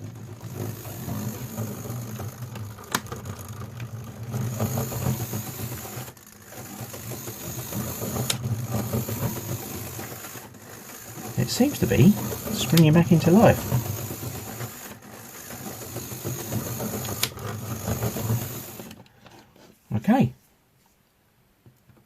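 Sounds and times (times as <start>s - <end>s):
model train motor buzzing hum: 0.0s - 19.1s.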